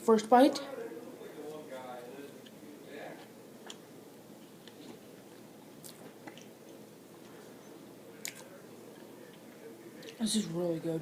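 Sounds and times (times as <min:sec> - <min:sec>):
person chewing food: 0:02.3 - 0:10.2.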